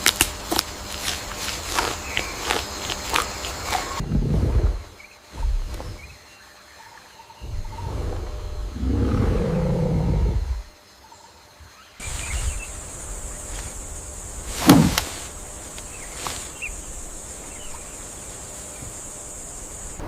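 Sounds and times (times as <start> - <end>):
high-pitched insect buzz: 7.4 - 20.0.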